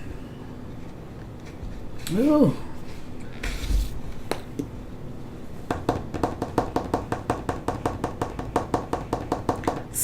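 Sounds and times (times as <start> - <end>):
fast run of taps: 5.7 - 10.0.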